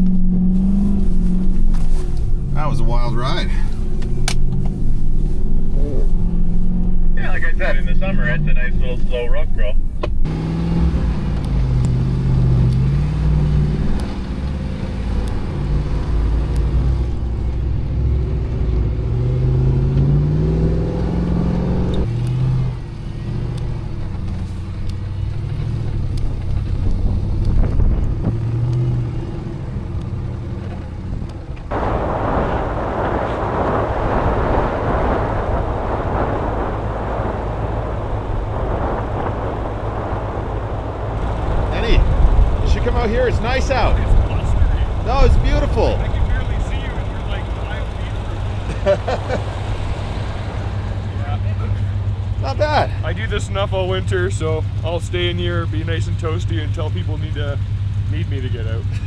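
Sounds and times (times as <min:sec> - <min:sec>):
vehicle engine revving: 0:00.0 - 0:59.0
steady rushing noise: 0:07.0 - 0:10.3, 0:26.6 - 0:56.2.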